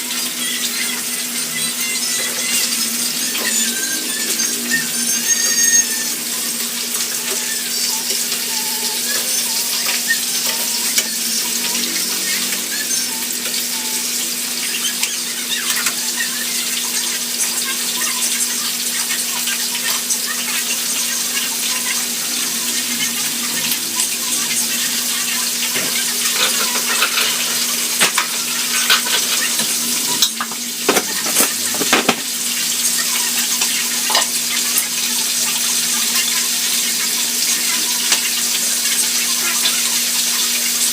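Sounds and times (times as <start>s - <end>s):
food sizzling in a pan: 0.0s - 40.9s
spatula scraping and knocking pan: 25.8s - 32.3s.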